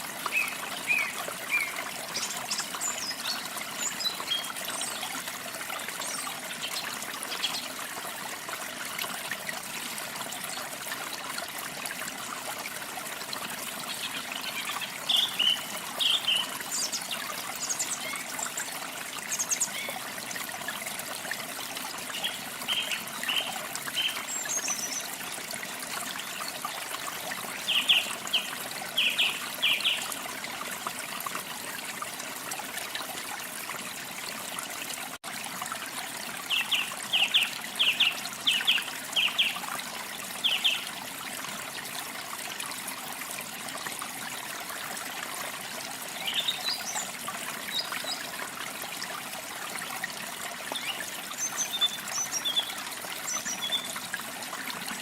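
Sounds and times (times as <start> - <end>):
water trickling: 0.0 - 55.0.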